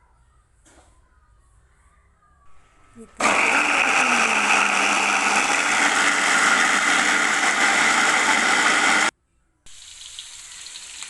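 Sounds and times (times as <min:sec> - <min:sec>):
electric blender running: 0:03.2 - 0:09.1.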